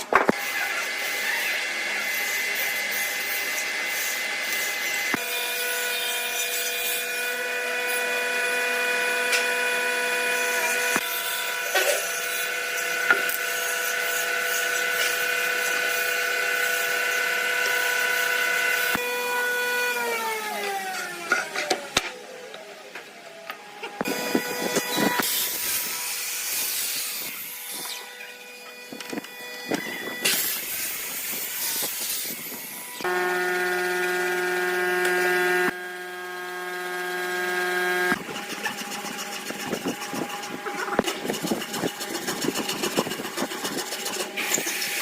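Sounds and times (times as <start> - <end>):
sawing and scraping wood: 0.0 - 22.1, 23.8 - 45.0
power tool motor humming: 24.0 - 45.0.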